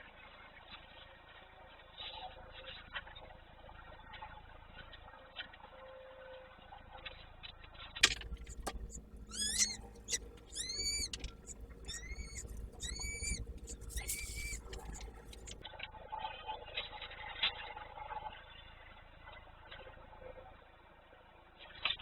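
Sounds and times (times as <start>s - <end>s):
bird calling: 8.0s - 15.6s
sharp click: 8.0s - 15.6s.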